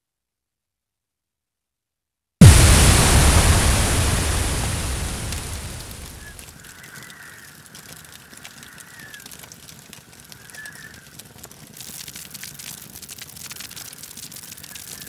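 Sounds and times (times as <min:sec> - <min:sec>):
synthesized explosion rumble: 0:02.4 - 0:06.4.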